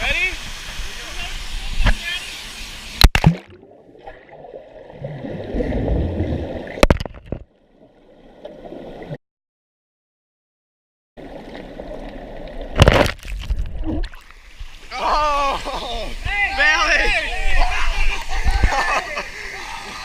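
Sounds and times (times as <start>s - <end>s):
water gurgling and sloshing: 2.9s - 9.2s, 11.2s - 14.9s.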